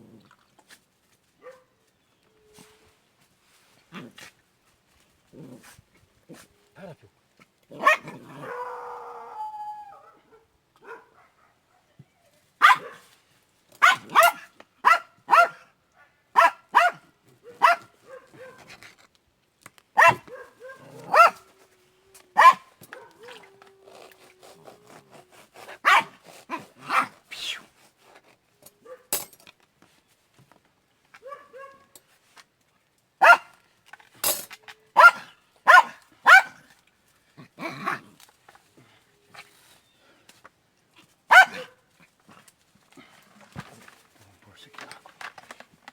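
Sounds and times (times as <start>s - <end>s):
dog barking: 1.4s - 1.7s, 7.8s - 8.7s, 10.0s - 12.0s, 12.6s - 13.1s, 13.8s - 15.7s, 16.4s - 18.7s, 20.0s - 21.5s, 22.4s - 23.4s, 25.8s - 27.2s, 28.8s - 29.1s, 31.2s - 31.9s, 33.2s - 33.6s, 35.0s - 36.6s, 41.3s - 41.8s.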